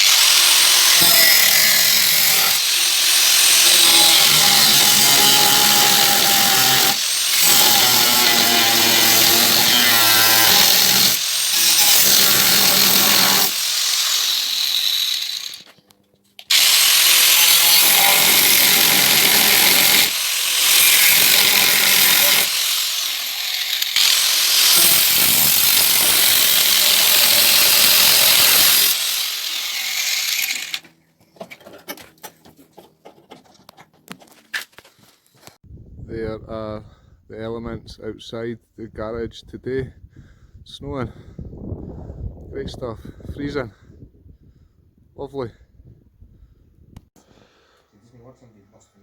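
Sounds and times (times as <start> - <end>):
angle grinder cutting sheet steel: 0.0 - 15.7, 16.5 - 30.8.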